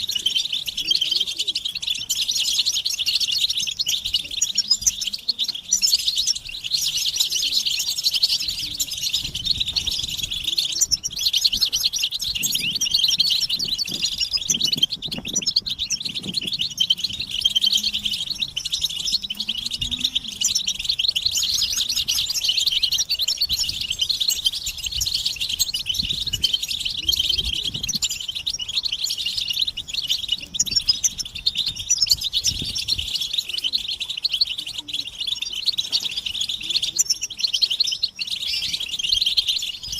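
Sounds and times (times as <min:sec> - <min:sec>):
goldfinches twittering: 0:00.0 - 0:39.9.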